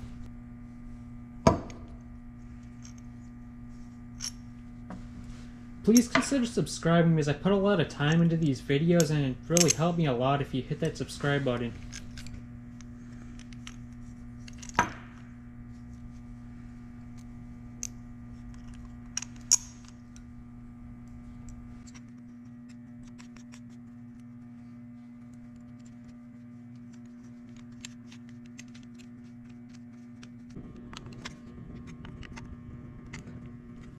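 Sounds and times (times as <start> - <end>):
steady low hum: 0.0 - 33.9
tools and metal parts clicking: 5.9 - 6.6, 7.9 - 10.1, 10.7 - 12.4, 13.4 - 15.1, 17.8 - 20.2, 21.8 - 24.2, 25.2 - 30.6.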